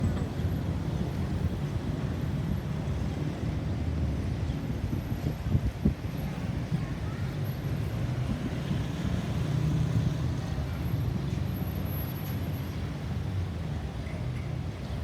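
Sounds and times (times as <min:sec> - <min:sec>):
road traffic rumble: 0:00.0 - 0:15.0.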